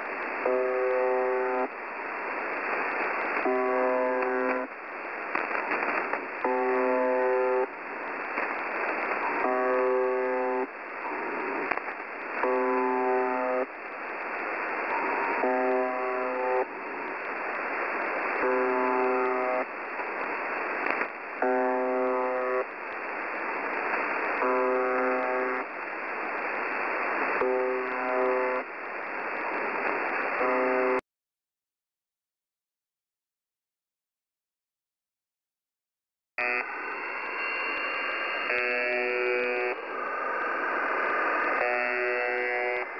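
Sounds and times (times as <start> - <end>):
radio static: 0.0 - 31.0, 36.4 - 42.9
harsh low buzz tone: 24.4 - 25.7, 36.4 - 39.9, 41.5 - 42.9.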